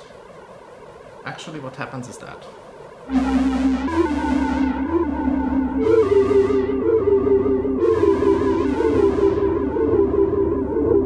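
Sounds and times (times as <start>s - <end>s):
overloaded delay echo wash: 3.1s - 11.0s
synthesizer notes: 3.1s - 11.0s.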